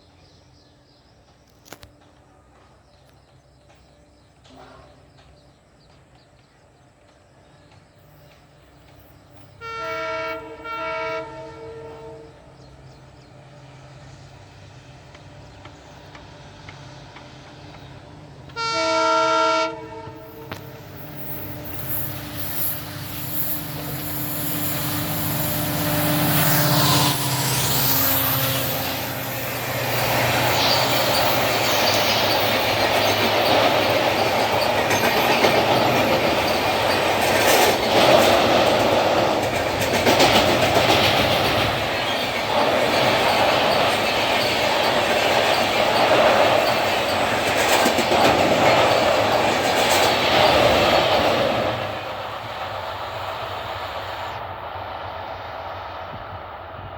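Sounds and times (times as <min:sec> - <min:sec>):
locomotive horn blasts: 0:09.6 - 0:12.5, 0:18.5 - 0:21.0
wheels clattering over rail joints: 0:25.5 - 0:52.8.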